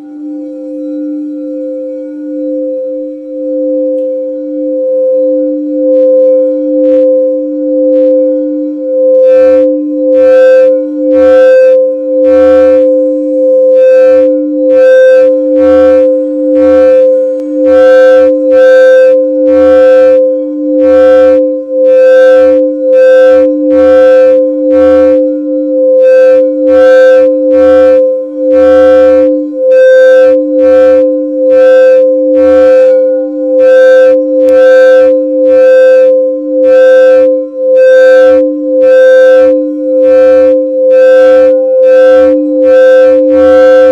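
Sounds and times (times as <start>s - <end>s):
singing bowls ringing: 0.0s - 18.5s.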